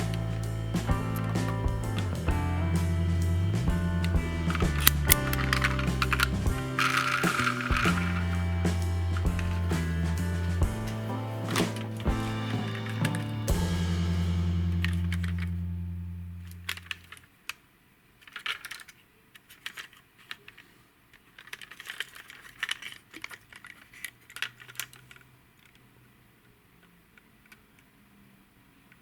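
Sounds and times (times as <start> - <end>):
music: 0.0 - 16.8
toy cars and packaging clicking: 4.5 - 8.4, 16.6 - 29.0.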